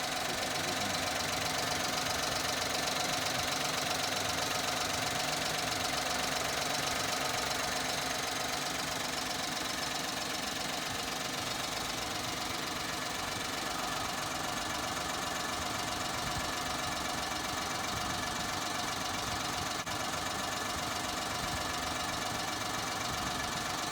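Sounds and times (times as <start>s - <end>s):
small car engine running: 0.0s - 23.9s.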